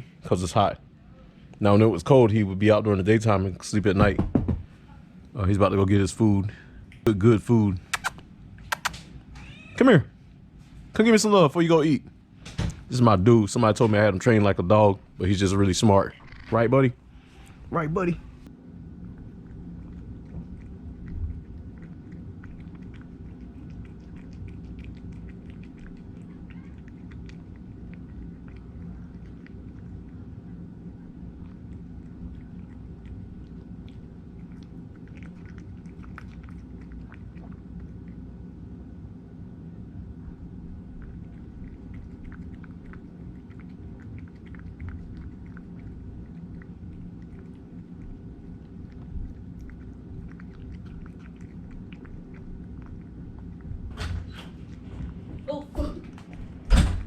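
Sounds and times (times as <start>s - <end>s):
steady low hum: 0.0s - 57.0s
cat chewing crunchy food: 18.4s - 56.7s.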